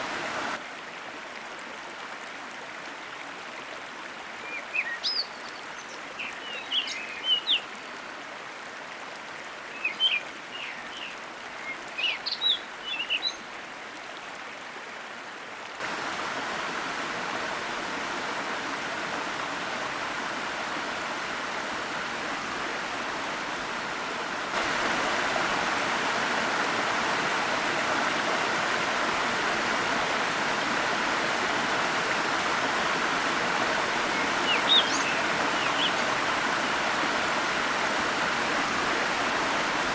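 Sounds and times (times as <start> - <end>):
waterfall rushing: 0.0 - 0.6, 15.8 - 39.9
small birds chirping: 4.5 - 7.7, 9.7 - 13.4, 34.0 - 36.1.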